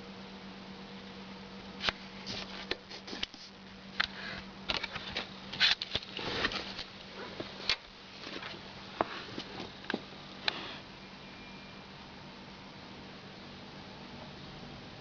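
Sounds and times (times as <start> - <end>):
faint steady hum: 0.0 - 15.0
rustling of handling: 1.8 - 10.8.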